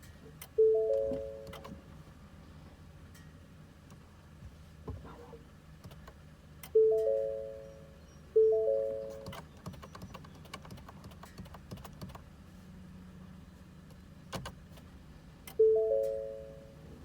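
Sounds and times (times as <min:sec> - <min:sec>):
dashboard warning chime: 0:00.6 - 0:01.7, 0:06.7 - 0:09.3, 0:15.5 - 0:16.9.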